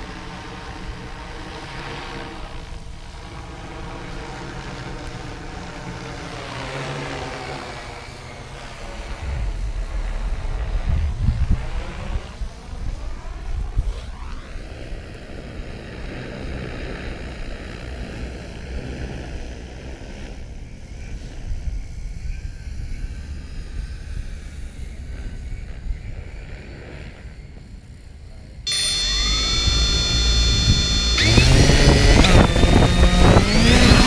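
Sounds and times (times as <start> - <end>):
drone propellers whirring: 0.0 - 21.0, 28.7 - 34.0
wind noise: 8.6 - 15.1, 28.9 - 34.0.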